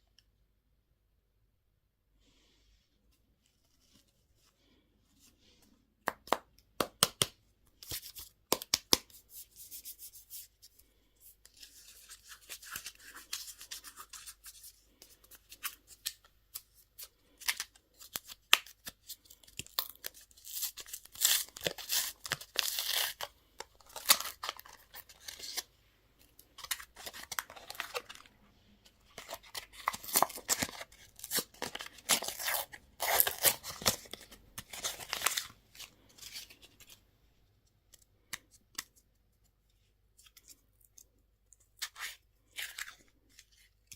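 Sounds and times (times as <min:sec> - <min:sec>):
packaging tearing and crinkling: 0:19.5 - 0:25.7, 0:29.2 - 0:35.5.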